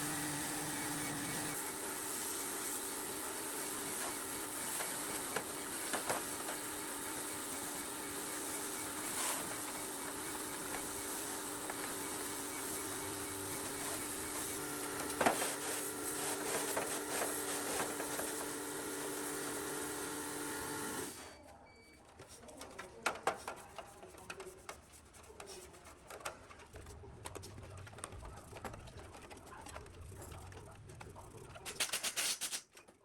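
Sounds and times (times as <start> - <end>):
power tool running: 0.0 - 21.3.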